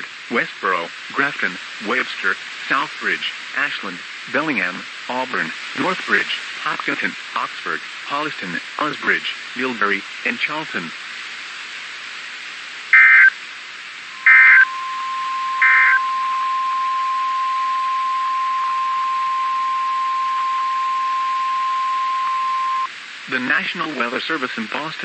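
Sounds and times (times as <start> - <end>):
harsh digital data tone bursts: 13.0 - 13.3, 14.2 - 22.9
steady warning alarm tone: 13.0 - 13.3, 14.2 - 22.9.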